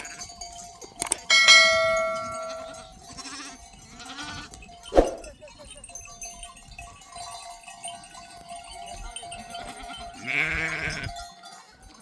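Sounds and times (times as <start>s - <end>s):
flock of sheep bleating: 0.0s - 4.7s, 7.9s - 12.0s
loud close sheep bleat: 9.7s - 11.2s.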